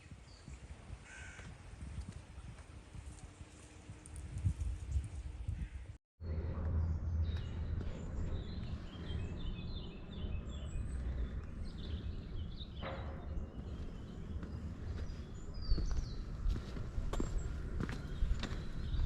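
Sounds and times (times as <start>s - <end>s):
songbirds chirping: 4.9s - 19.0s
steady low rumble: 6.2s - 19.0s.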